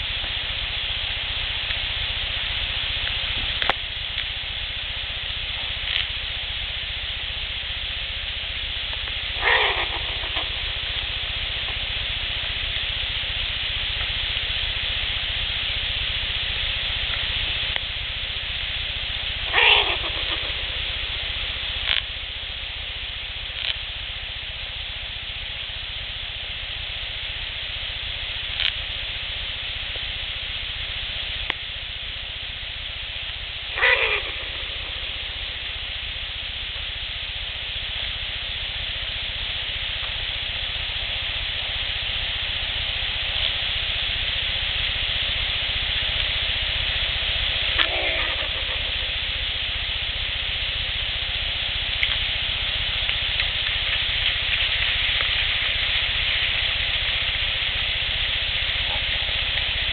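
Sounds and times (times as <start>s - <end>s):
faint ticks: 0.0s - 4.5s, 5.2s - 6.4s, 8.8s - 17.9s, 18.5s - 24.8s, 27.0s - 32.2s, 32.9s - 59.9s
steady hiss: 0.0s - 59.9s
animal call dropping in pitch: 9.4s - 11.0s, 19.5s - 21.1s, 33.8s - 35.6s, 47.7s - 49.5s.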